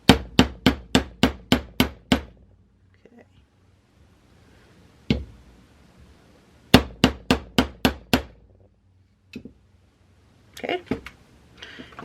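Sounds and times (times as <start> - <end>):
hammer striking wire on metal: 0.0 - 2.4.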